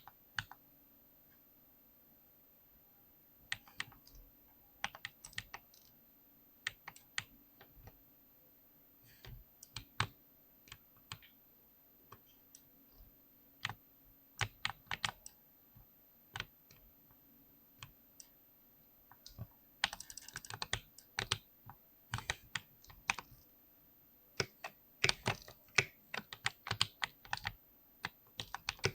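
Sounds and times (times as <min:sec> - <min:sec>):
mechanical keyboard typing: 0:03.5 - 0:04.2, 0:04.8 - 0:05.9, 0:09.2 - 0:11.3, 0:14.4 - 0:15.4, 0:19.1 - 0:21.5, 0:22.1 - 0:23.4, 0:24.4 - 0:28.9.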